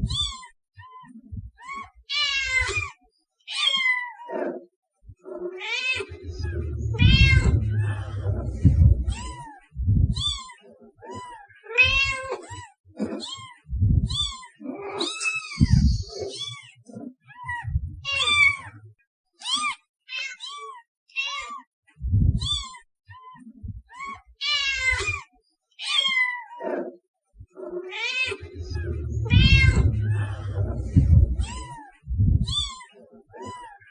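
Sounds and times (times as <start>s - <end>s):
cat meowing: 0.0s - 4.3s, 5.5s - 16.7s, 17.3s - 18.8s, 19.4s - 21.6s, 22.4s - 26.6s, 27.8s - 33.8s
low thuds: 6.2s - 10.2s, 13.7s - 14.2s, 15.6s - 16.1s, 17.6s - 18.1s, 22.0s - 22.5s, 28.4s - 32.5s.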